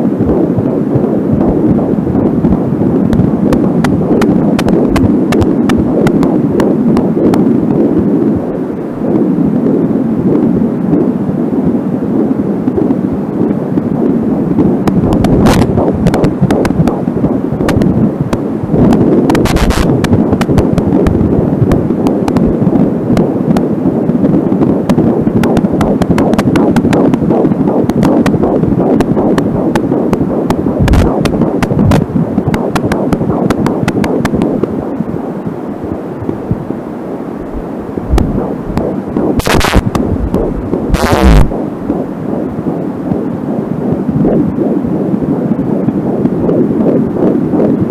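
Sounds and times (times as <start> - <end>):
whooshing fetal heartbeat: 0.0 - 47.9
static clicks: 3.1 - 7.5, 14.8 - 18.4, 19.2 - 21.2, 24.8 - 34.7, 37.4 - 42.0
fetal doppler rumbling whoosh: 37.4 - 42.4.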